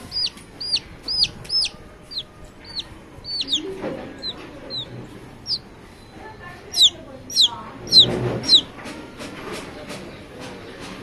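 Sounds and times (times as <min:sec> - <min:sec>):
hen clucking: 0:00.0 - 0:05.8, 0:06.6 - 0:08.8
baby chicks peeping: 0:00.0 - 0:11.0.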